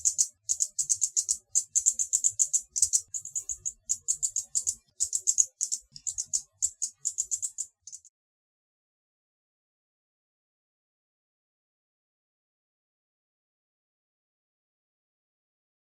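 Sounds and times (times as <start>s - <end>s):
hummingbird chittering: 0.0s - 8.1s.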